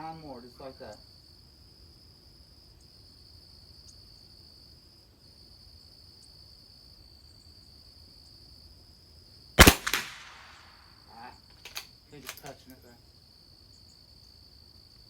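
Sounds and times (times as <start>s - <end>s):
high-pitched insect chorus: 0.0s - 15.0s
rifle shot with echo: 9.6s - 10.8s.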